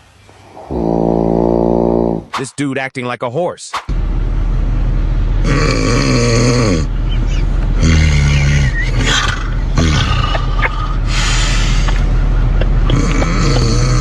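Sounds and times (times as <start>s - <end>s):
person snoring loudly: 0.4s - 2.3s, 5.4s - 6.9s, 7.8s - 11.5s, 12.9s - 14.0s.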